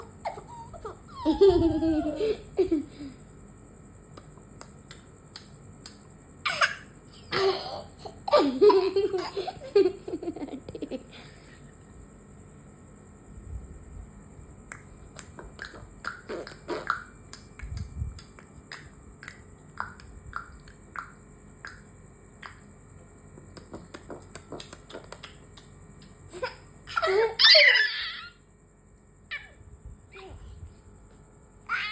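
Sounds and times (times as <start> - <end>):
mouth clicks and pops: 4.1 - 6.0, 14.7 - 22.7, 23.5 - 26.2
loud squealing vocal outburst: 27.4 - 28.4.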